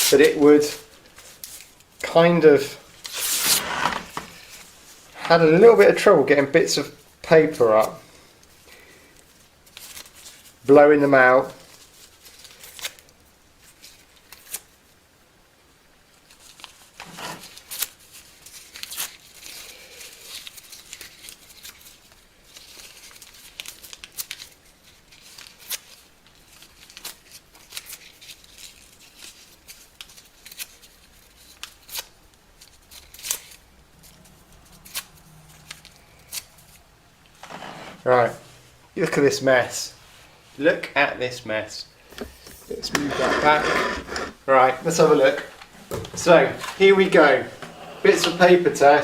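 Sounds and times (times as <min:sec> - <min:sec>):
paper tearing: 0:03.0 - 0:04.6, 0:42.7 - 0:44.4.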